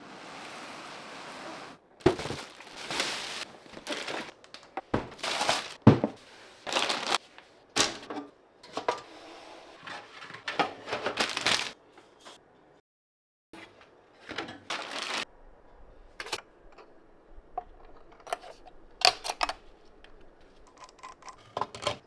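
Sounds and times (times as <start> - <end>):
packaging crinkling: 2.0 - 8.1, 11.1 - 11.8, 14.7 - 15.3.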